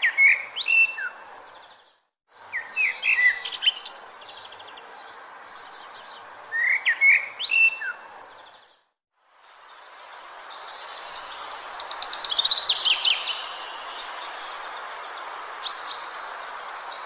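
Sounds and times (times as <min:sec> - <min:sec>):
songbird singing: 0:00.0 - 0:17.0
background hiss: 0:09.2 - 0:17.0.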